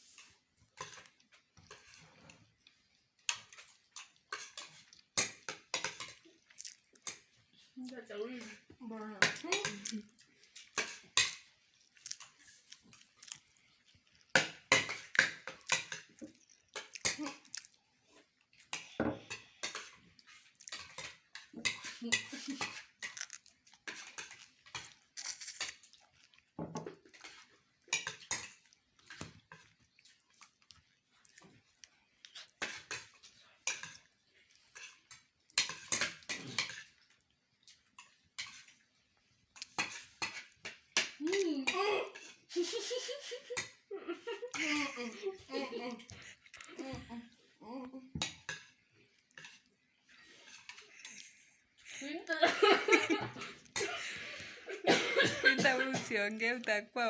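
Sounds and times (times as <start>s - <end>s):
chewing: 0.0s - 8.7s, 9.3s - 47.6s, 48.2s - 52.0s
cutlery clinking on plates: 0.2s - 2.5s, 3.2s - 6.2s, 10.6s - 11.6s, 14.3s - 17.3s, 18.8s - 26.0s, 26.6s - 29.8s, 32.5s - 37.1s, 39.6s - 41.2s, 48.2s - 48.8s, 50.2s - 51.3s.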